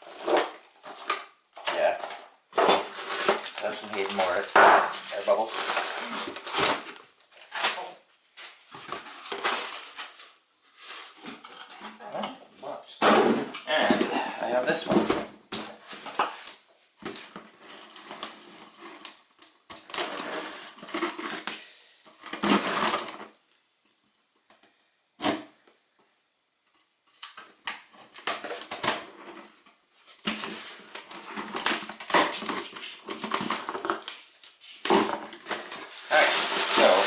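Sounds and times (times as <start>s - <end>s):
packaging rustling and crinkling: 0.0s - 12.0s, 28.0s - 37.0s.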